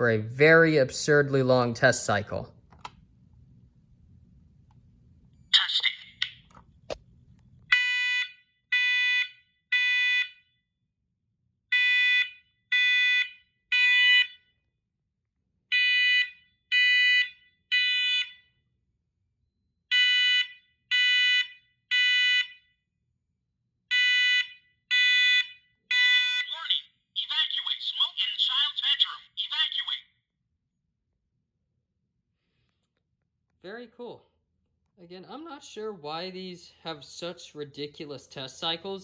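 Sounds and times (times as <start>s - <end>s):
click: 2.7s - 3.0s
smoke alarm beeping: 7.7s - 10.5s, 11.7s - 14.5s, 15.7s - 18.5s, 19.9s - 22.8s, 23.9s - 26.5s.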